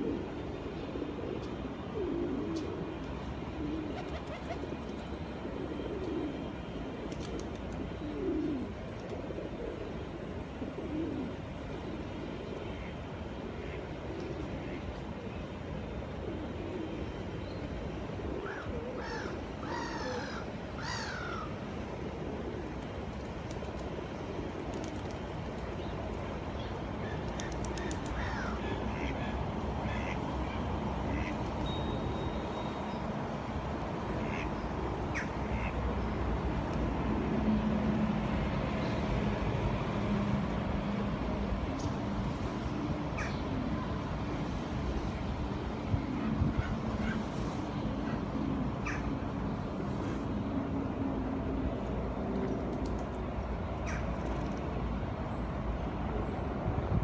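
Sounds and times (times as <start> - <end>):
duck calls: 29.0 - 29.2, 35.2 - 35.7.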